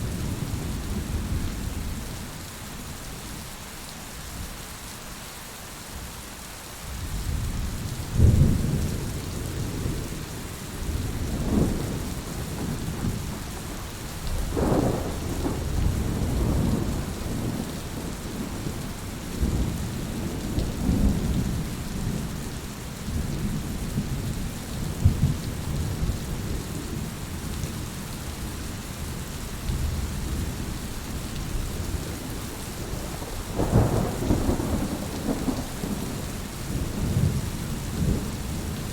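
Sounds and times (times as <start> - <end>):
steady rain: 0.0 - 38.9
rolling thunder: 10.8 - 22.4, 31.5 - 38.9.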